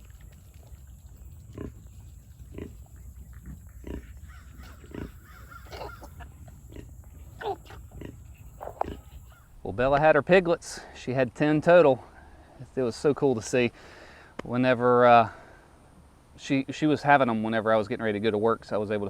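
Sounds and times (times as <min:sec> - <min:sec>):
pigs grunting and squeaking: 0:00.0 - 0:09.6
steady low rumble: 0:00.0 - 0:11.2.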